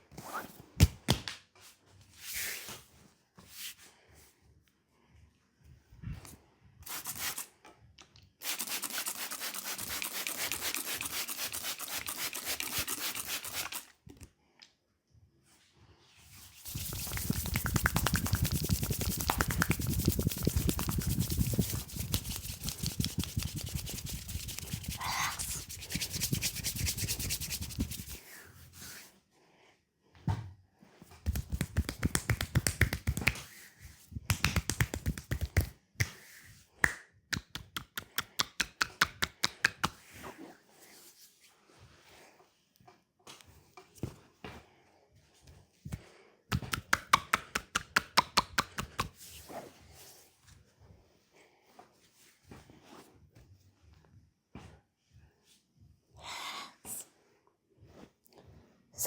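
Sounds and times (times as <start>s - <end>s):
hands rubbing bare skin: 8.4s - 13.9s, 16.4s - 29.1s, 31.3s - 41.3s
sharp slaps on skin: 31.3s - 33.4s, 34.3s - 36.2s.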